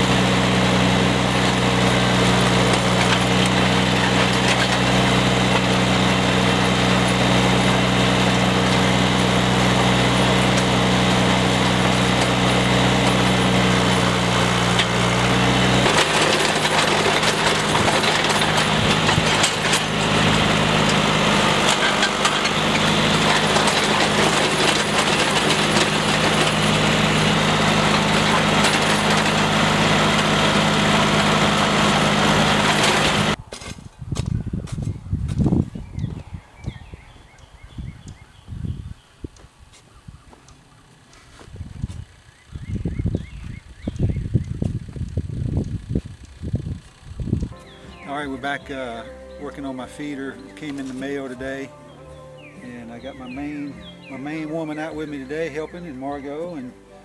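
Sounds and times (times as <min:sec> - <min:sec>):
small gasoline engine running: 0:00.0 - 0:33.4.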